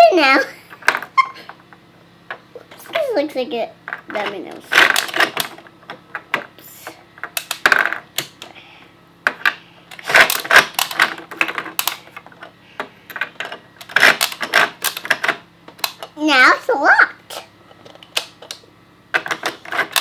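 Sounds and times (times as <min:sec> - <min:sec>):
plastic toy parts clattering: 0:03.9 - 0:06.5, 0:09.4 - 0:12.5, 0:13.1 - 0:16.2, 0:17.3 - 0:20.0.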